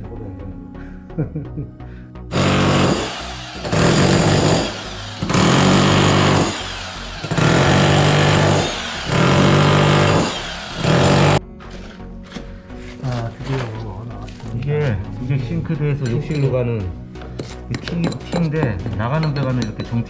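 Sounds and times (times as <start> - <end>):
electric power tool running: 2.3 - 11.4.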